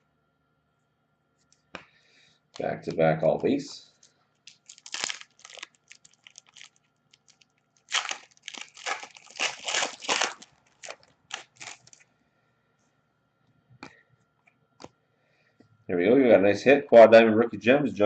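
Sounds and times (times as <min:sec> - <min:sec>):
wrapper crinkling and tearing: 0:04.4 - 0:12.0
cards rustling: 0:04.5 - 0:12.0.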